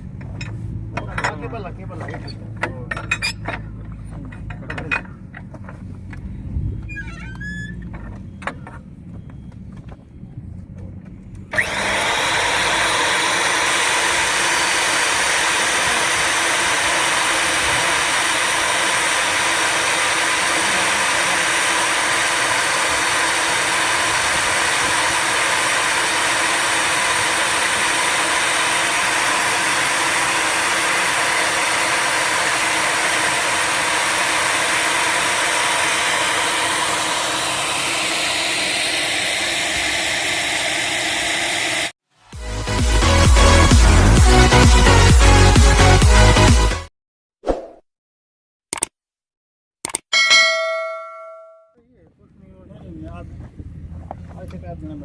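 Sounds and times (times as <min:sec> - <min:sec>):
welding machine motor running: 0:11.5 - 0:41.9.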